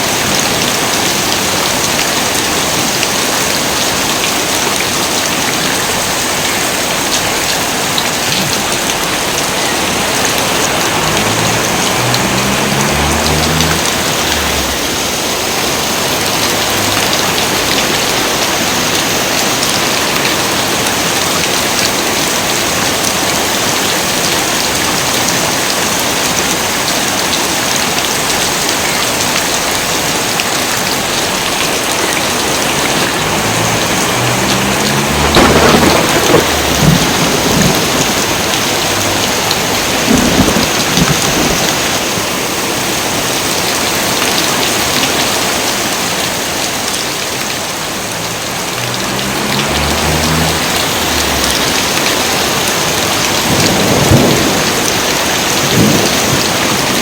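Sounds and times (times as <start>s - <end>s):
heavy rain: 0.0s - 57.0s
thunder rumbling: 32.1s - 42.1s, 48.2s - 57.0s
loud thunder clap: 34.4s - 41.7s, 53.1s - 57.0s.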